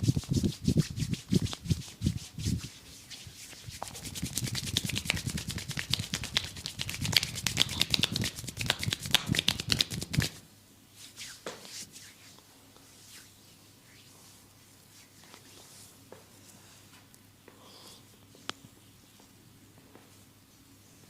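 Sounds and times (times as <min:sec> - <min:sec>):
hands rubbing over skin: 0:00.0 - 0:10.4, 0:11.0 - 0:12.4
soft touches on skin: 0:00.0 - 0:10.4, 0:11.0 - 0:17.1.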